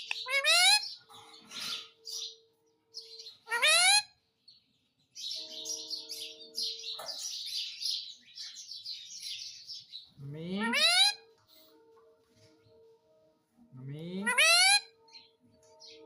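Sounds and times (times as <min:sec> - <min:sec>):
parrot rapid high chirping: 0:00.0 - 0:01.0, 0:03.4 - 0:04.1, 0:10.6 - 0:11.2, 0:14.2 - 0:14.9
parrot shrill call: 0:00.1 - 0:01.0, 0:03.5 - 0:04.1, 0:10.6 - 0:11.2, 0:14.2 - 0:14.9.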